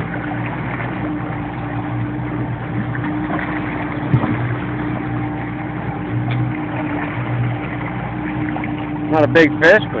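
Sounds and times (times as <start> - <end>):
boat engine idling: 0.0 - 10.0.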